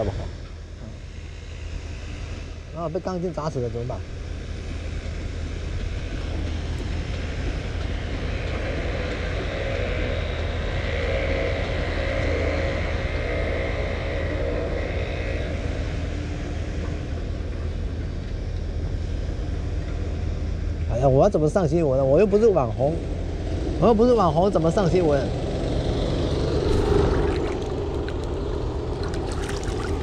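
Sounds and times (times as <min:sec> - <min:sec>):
low traffic rumble: 0:00.0 - 0:30.0
vehicle passing: 0:25.2 - 0:30.0.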